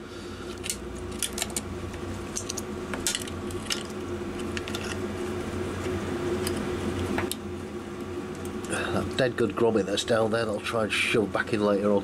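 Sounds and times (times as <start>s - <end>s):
low background hum: 0.0s - 12.0s
wires and metal connectors clicking: 0.5s - 5.0s.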